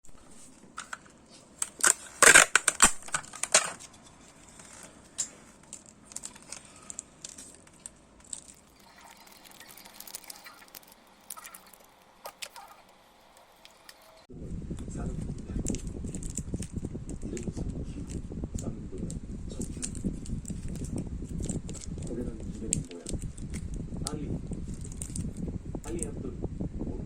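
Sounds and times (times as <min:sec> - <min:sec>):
helicopter parts clicking and rattling: 0:00.7 - 0:09.0.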